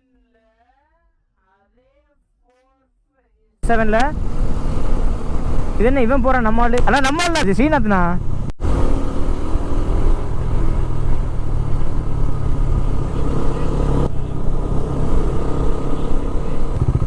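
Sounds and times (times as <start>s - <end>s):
motorcycle engine running: 3.6s - 17.0s
wind noise on microphone: 3.6s - 17.0s.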